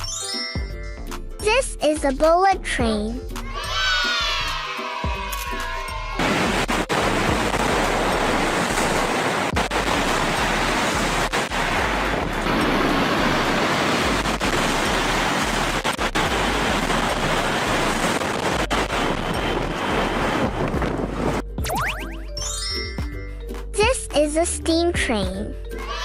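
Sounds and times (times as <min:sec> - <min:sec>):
bullet train rushing: 0:16.1 - 0:21.4.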